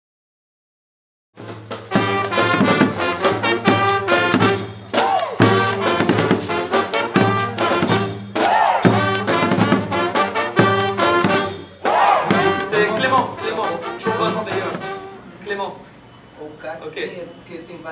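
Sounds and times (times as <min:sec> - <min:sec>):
brass band playing: 0:01.4 - 0:15.4.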